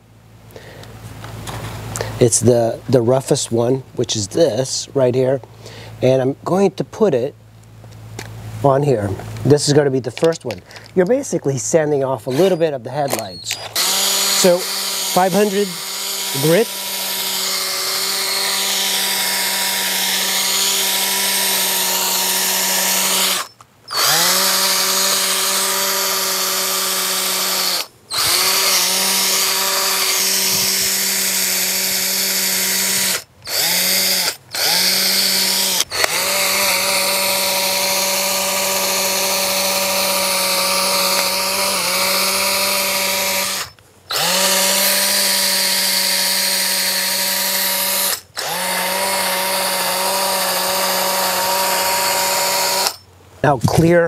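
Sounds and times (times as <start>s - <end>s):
electric drill sanding: 12.2s - 53.0s.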